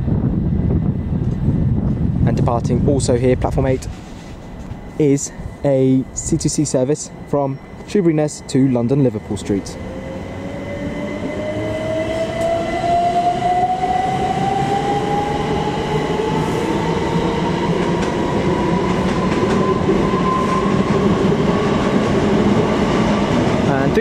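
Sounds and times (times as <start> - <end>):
low train rumble: 0.0 - 24.0
traction motor whine rising: 9.2 - 23.6.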